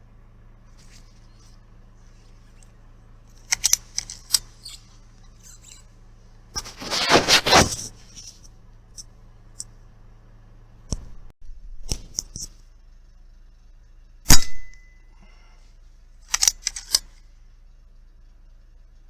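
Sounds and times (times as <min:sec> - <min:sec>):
rifle shot: 0:14.3 - 0:14.8
rifle handling clicks: 0:16.3 - 0:17.1.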